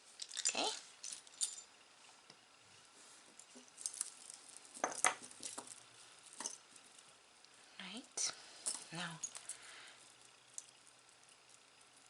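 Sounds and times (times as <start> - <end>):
jewelry clinking and rattling: 0.0 - 1.8, 3.4 - 7.1, 8.6 - 12.0.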